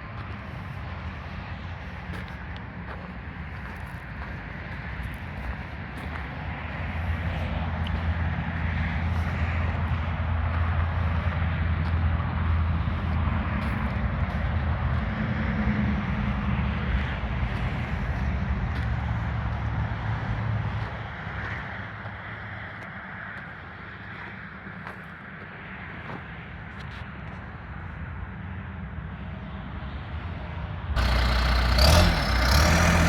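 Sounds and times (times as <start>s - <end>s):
diesel engine running: 31.0s - 33.0s.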